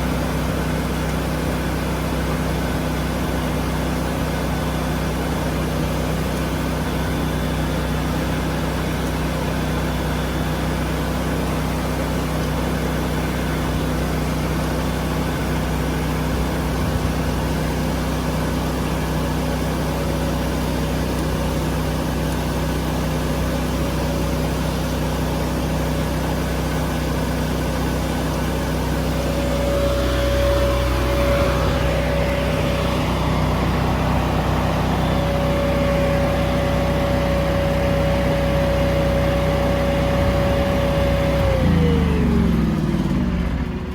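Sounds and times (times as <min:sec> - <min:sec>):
diesel engine idling: 0:24.8 - 0:43.9
high steady whine: 0:27.7 - 0:43.9.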